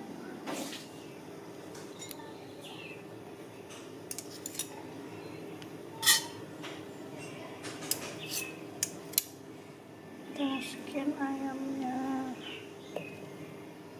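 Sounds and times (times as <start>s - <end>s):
metal utensils clinking: 4.1s - 4.8s, 6.0s - 6.4s.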